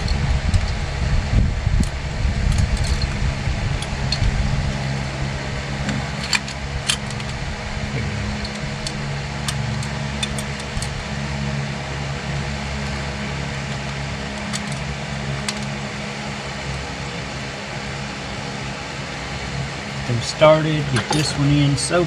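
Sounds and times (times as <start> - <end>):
steady machine hum: 0.0 - 22.0
metal parts clicking: 8.4 - 11.0, 13.7 - 15.7.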